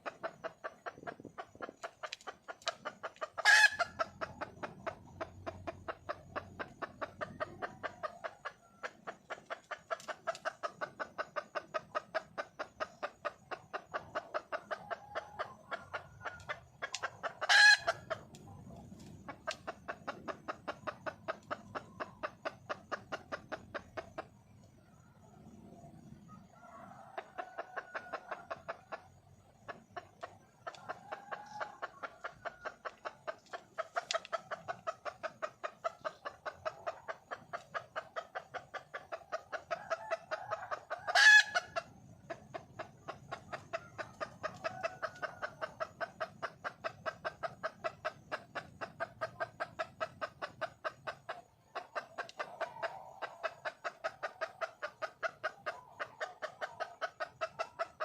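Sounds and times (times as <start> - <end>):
hen clucking: 0.0 - 58.0
loud sharp hen call: 3.4 - 4.1, 14.8 - 18.2, 39.6 - 41.9.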